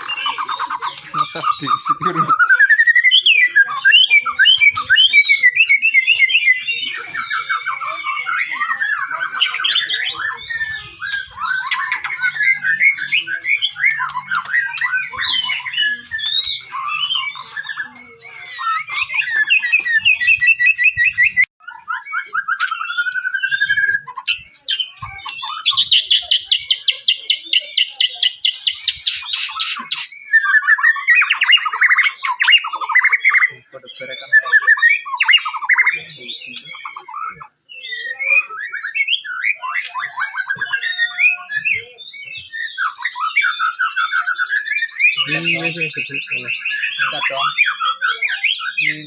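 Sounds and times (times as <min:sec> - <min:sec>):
harsh rattling bird phrase: 0:00.0 - 0:06.8, 0:44.2 - 0:49.0
bird singing varied song: 0:00.0 - 0:49.0.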